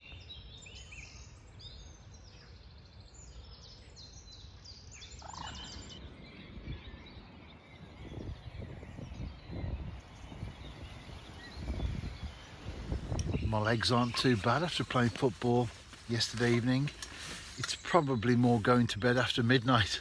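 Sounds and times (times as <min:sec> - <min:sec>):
songbirds chirping and trilling: 0:00.0 - 0:20.0.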